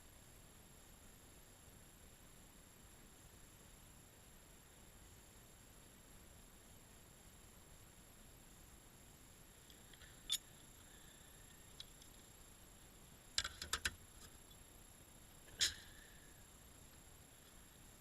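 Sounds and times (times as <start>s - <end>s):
faint steady hiss: 0.0s - 18.0s
sharp clicks and knocks: 13.3s - 14.4s.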